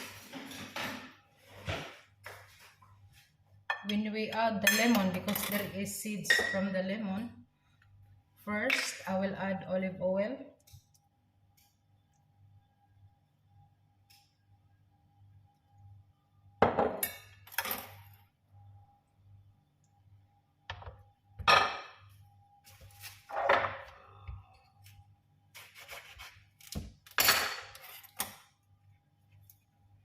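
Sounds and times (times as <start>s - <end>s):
faint steady hum: 2.9s - 25.5s
dishes clinking: 21.4s - 22.0s.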